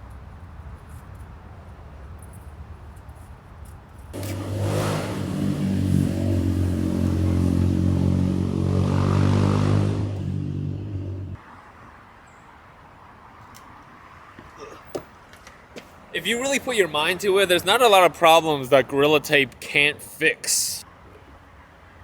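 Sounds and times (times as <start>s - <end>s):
vehicle engine running: 4.2s - 11.4s.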